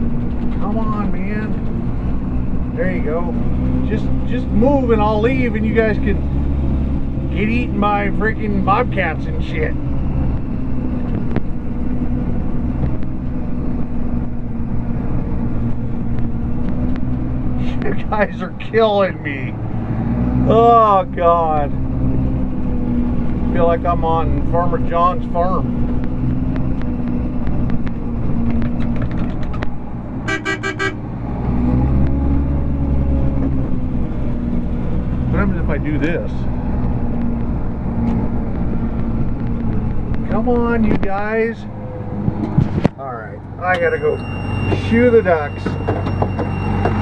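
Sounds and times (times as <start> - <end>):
vehicle engine running: 0.0 - 47.0
vehicle horn beeps: 30.2 - 31.0.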